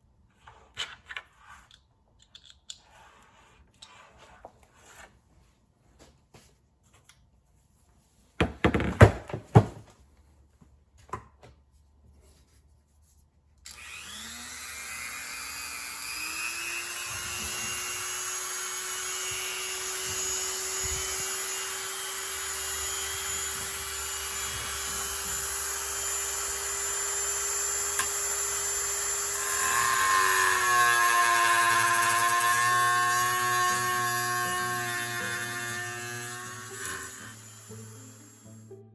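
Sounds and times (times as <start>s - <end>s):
rotary tool whining: 13.7s - 38.6s.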